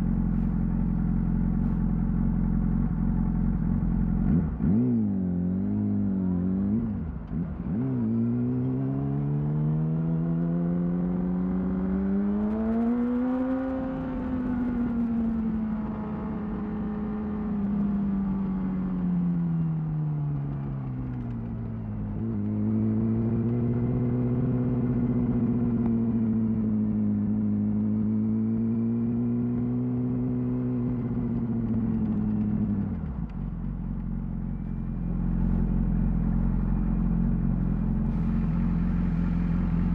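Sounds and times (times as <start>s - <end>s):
motorcycle engine revving: 22.3s - 39.9s.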